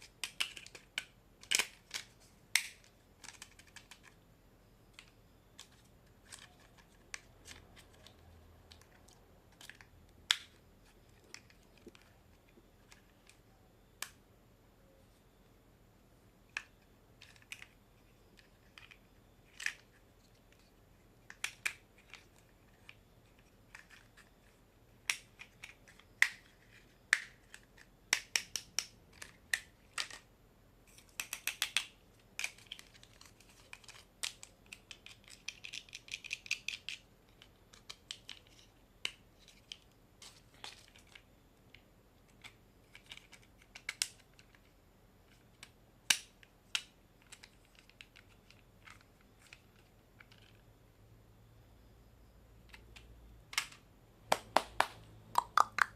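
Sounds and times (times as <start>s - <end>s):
small hard objects clicking: 0.0s - 4.2s, 21.2s - 30.2s, 30.9s - 44.7s, 52.7s - 55.9s.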